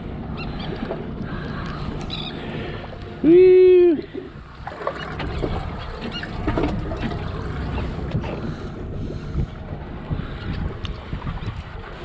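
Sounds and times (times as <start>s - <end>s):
water lapping against boat hull: 0.0s - 12.0s
wind buffeting microphone: 3.6s - 12.0s.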